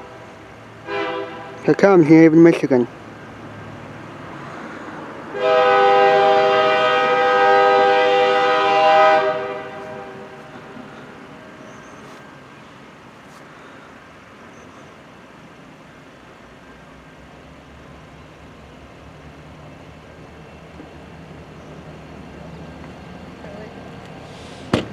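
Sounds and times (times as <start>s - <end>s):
locomotive air horn: 0.0s - 1.8s, 5.3s - 11.2s
passing train rumble: 0.0s - 24.9s.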